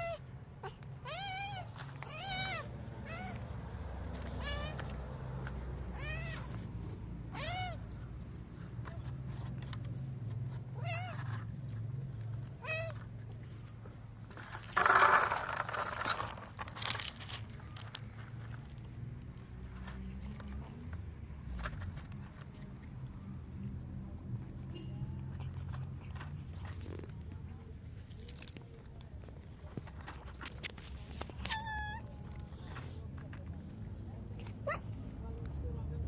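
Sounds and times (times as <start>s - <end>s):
cats meowing: 0.0s - 3.5s, 5.9s - 6.6s, 7.3s - 8.0s, 10.7s - 11.4s, 31.4s - 32.1s
rustling noise: 8.6s - 18.9s, 25.4s - 33.4s.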